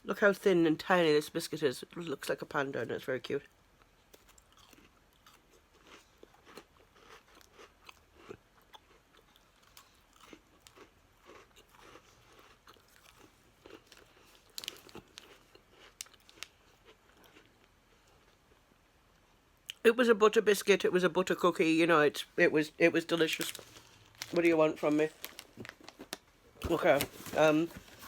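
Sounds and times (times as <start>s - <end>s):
biscuit crunching and chewing: 3.6s - 19.8s.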